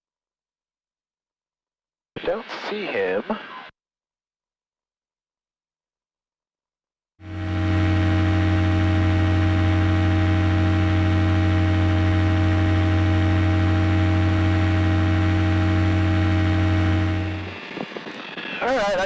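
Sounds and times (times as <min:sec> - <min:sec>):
light aircraft engine drone: 0:07.2 - 0:19.0.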